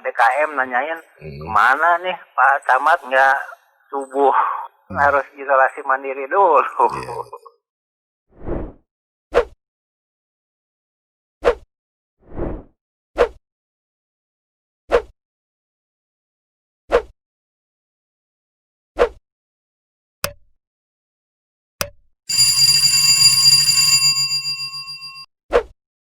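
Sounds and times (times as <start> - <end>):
bell-like ringing tones: 22.3 - 25.3.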